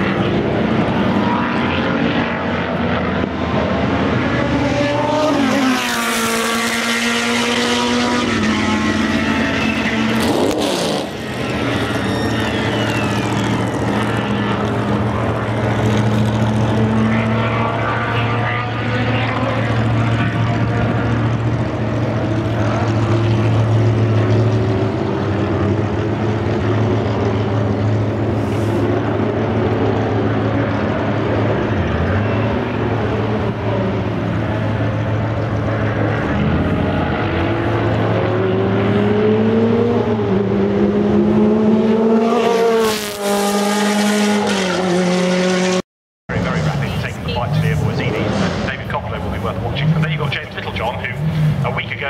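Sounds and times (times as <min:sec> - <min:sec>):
racing car engines revving: 0:00.0 - 0:52.0.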